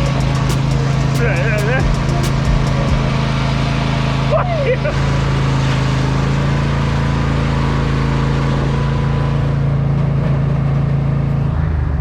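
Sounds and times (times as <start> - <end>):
riding lawn mower engine: 0.0 - 12.0.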